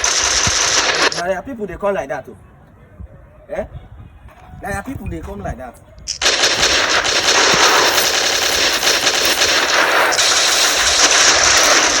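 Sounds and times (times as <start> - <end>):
rapid machine-gun fire: 0.0 - 1.2, 6.1 - 12.0.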